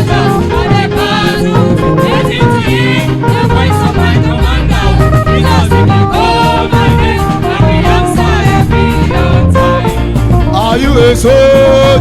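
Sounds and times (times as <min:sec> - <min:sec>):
worship band music: 0:00.0 - 0:12.0
person singing: 0:10.6 - 0:12.0.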